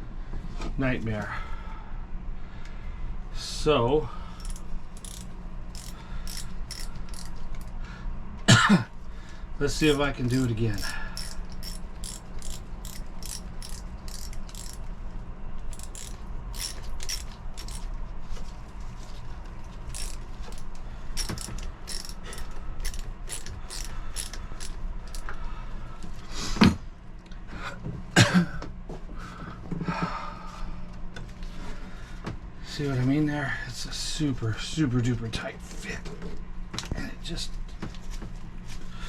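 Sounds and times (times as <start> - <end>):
low steady hum: 0.0 - 39.0
hand ratchet clicking: 4.4 - 7.8, 9.7 - 14.9, 15.7 - 17.8, 19.9 - 25.4.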